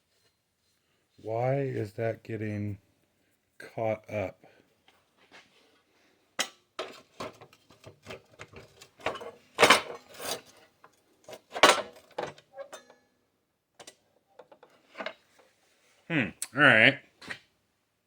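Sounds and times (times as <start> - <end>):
metallic clanks of tools and steel: 6.4 - 13.1.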